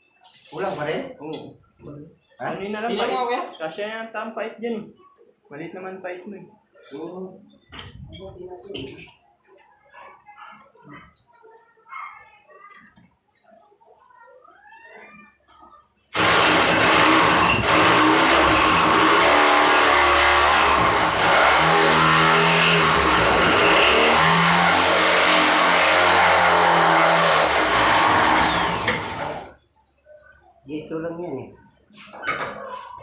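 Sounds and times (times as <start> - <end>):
loud motor running: 16.2 - 29.6.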